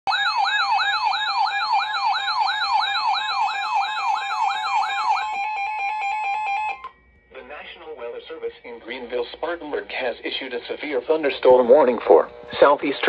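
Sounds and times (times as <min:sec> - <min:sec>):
siren sweeping up and down: 0:00.1 - 0:07.0.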